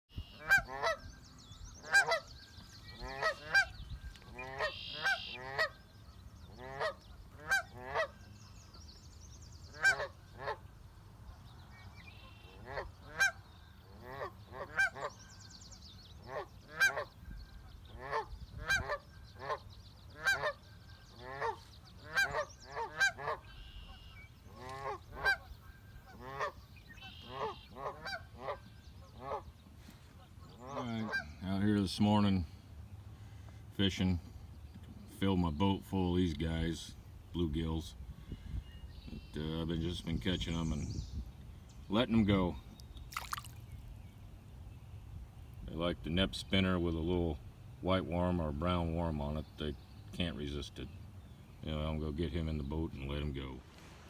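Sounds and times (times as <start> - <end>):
geese honking: 0.1 - 1.1, 1.8 - 5.8, 6.5 - 8.2, 9.7 - 10.7, 12.2 - 15.2, 16.2 - 29.5, 30.1 - 31.6
higher bird calls: 0.1 - 31.6.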